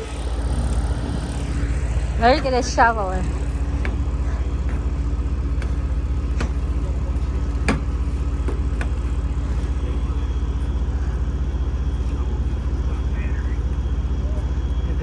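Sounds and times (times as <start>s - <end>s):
tractor engine running: 0.0s - 15.0s
sharp knocks: 7.6s - 9.0s.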